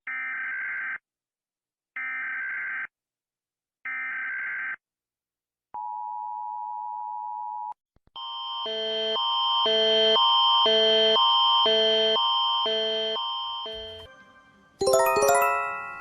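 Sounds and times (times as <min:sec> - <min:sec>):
alarm stepping between tones: 0:12.7 - 0:14.1
steady attention tone: 0:13.7 - 0:14.2.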